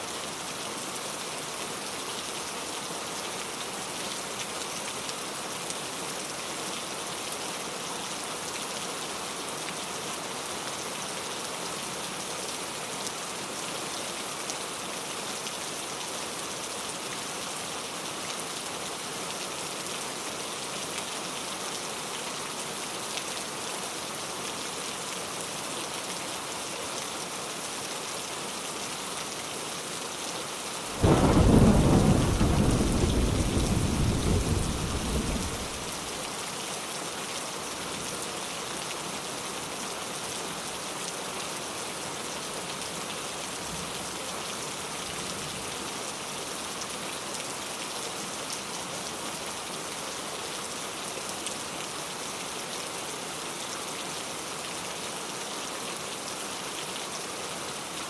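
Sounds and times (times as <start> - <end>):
steady rain: 0.0 - 58.0
thunder clap rumbling: 31.0 - 36.1.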